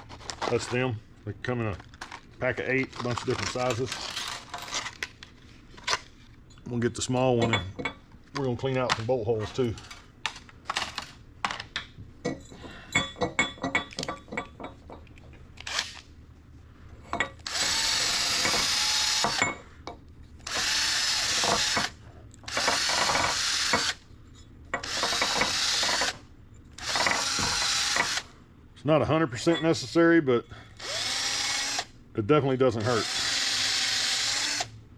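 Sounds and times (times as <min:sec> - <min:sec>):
metal tools clinking: 0:07.4 - 0:08.0, 0:12.2 - 0:15.2, 0:29.4 - 0:30.0
power drill with wire brush: 0:17.5 - 0:19.4, 0:20.5 - 0:21.9, 0:26.8 - 0:28.2, 0:30.8 - 0:31.9, 0:32.8 - 0:34.7.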